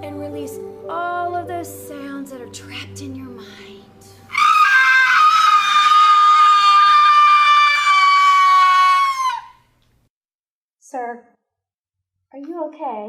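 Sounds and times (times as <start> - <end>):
high-pitched human scream: 4.3 - 9.7.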